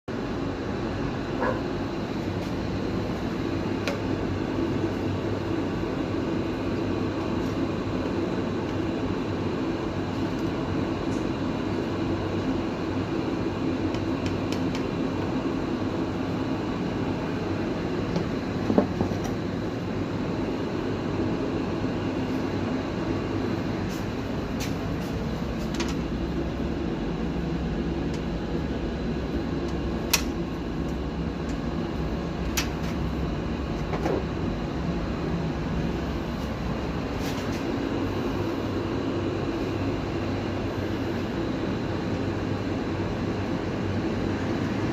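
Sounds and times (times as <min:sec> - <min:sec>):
air conditioner fan humming: 0:00.1 - 0:44.9.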